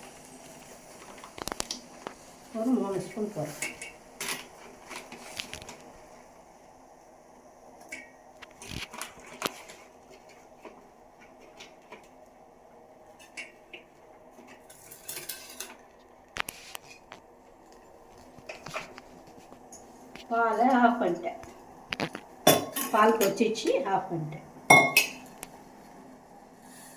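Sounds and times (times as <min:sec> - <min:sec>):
metal spoon clinking against pot: 0:24.7 - 0:25.2.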